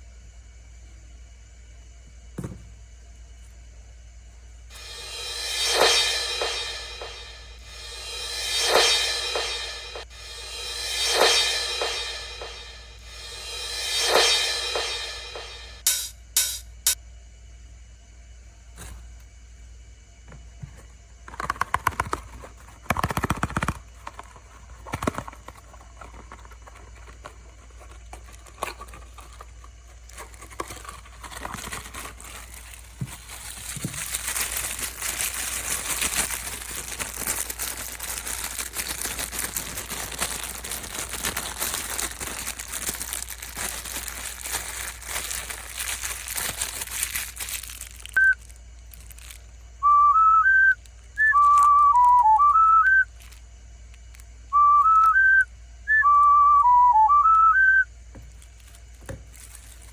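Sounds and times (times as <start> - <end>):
packaging crinkling: 20.7 - 49.6, 50.8 - 55.1, 58.1 - 59.9.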